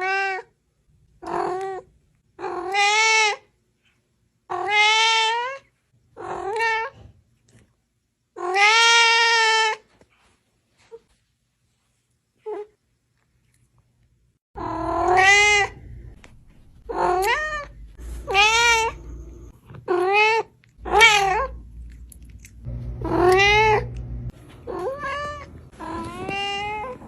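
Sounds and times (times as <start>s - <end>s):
cat meowing loudly: 8.4s - 9.8s, 14.6s - 15.8s, 16.9s - 19.0s, 19.9s - 21.6s, 23.0s - 23.9s, 24.7s - 27.0s.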